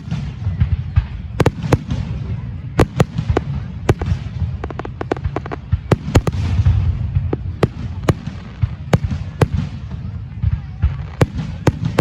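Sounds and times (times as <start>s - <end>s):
continuous low rumble: 0.0s - 12.0s
firework shells bursting: 2.8s - 9.6s
small firework cracks: 2.8s - 12.0s.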